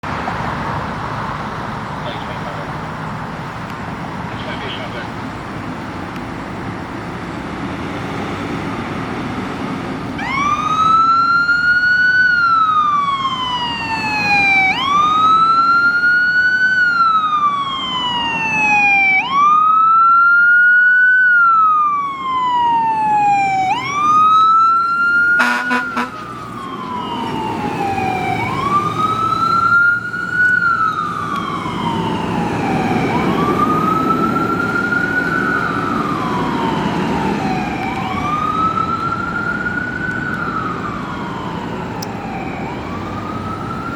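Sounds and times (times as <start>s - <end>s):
engine and road noise: 0.0s - 43.9s
fire engine siren wailing: 0.0s - 43.9s
horn blast: 25.4s - 26.3s.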